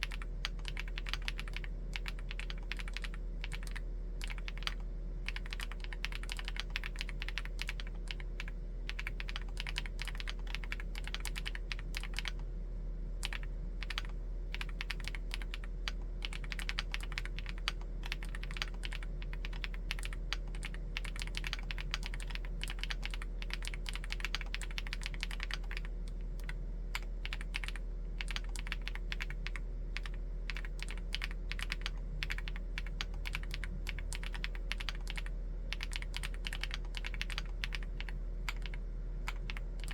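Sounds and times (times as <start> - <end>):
mechanical keyboard typing: 0.0 - 12.4, 13.2 - 39.9
faint low hum: 0.0 - 39.9.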